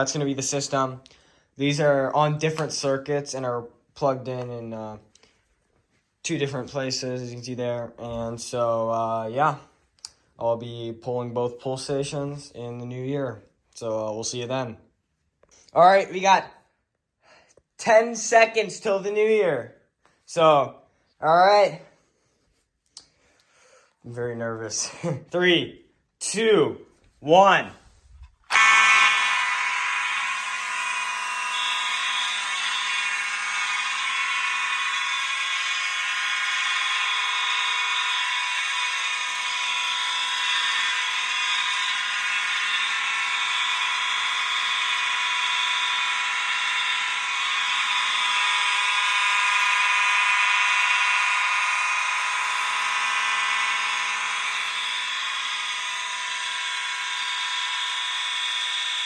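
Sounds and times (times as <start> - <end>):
fire alarm motor bell: 36.2 - 59.0.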